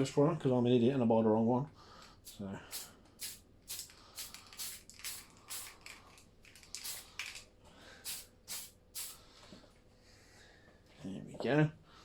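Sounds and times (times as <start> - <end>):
aerosol spray can hissing: 2.3 - 5.8, 6.8 - 7.2, 8.0 - 9.2.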